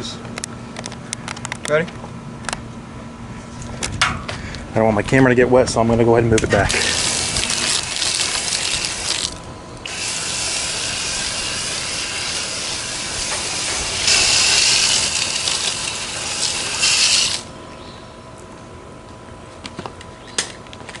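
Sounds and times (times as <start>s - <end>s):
hose spraying water: 6.7s - 17.5s.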